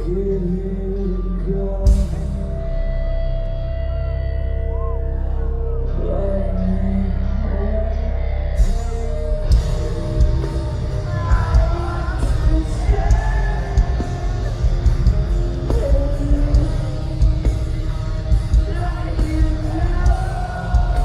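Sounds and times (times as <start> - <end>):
low held drone: 0.0 - 21.0
person singing: 0.0 - 21.0
rock band playing: 1.2 - 4.0, 8.5 - 21.0.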